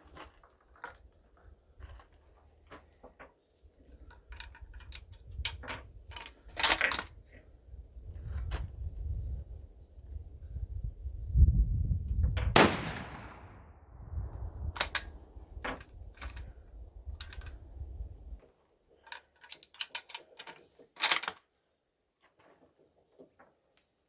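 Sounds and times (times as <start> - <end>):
low wind rumble: 7.1 - 18.4
rifle shot with echo: 12.5 - 14.0.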